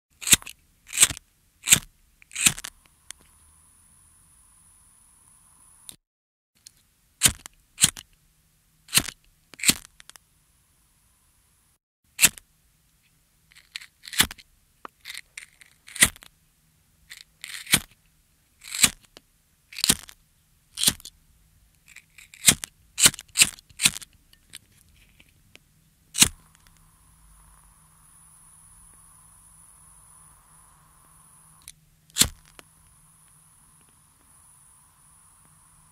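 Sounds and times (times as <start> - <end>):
flint rasp: 0.2 - 2.8, 7.2 - 8.1, 8.9 - 10.2, 13.5 - 14.4, 15.0 - 16.3, 17.1 - 18.0, 18.6 - 19.1, 19.7 - 20.2, 20.8 - 21.1, 21.8 - 25.3, 26.2 - 26.8, 31.6 - 32.7
lighter flame hissing: 26.2 - 35.9.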